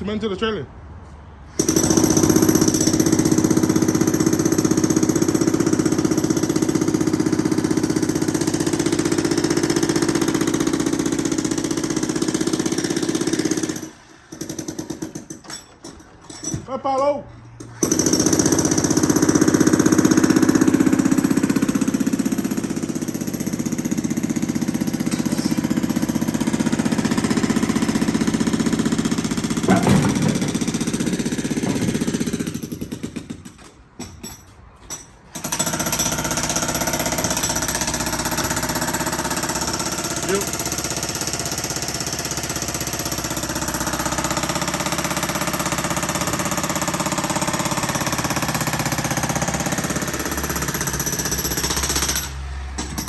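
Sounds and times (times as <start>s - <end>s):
jackhammer breaking concrete: 1.6s - 16.0s, 17.6s - 34.4s, 35.3s - 53.0s.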